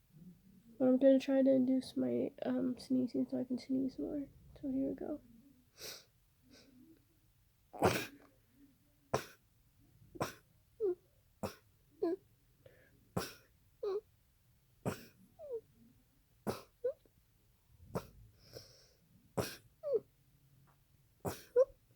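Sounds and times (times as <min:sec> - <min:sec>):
person coughing: 0:07.8 - 0:08.2, 0:14.9 - 0:15.2, 0:21.3 - 0:21.7.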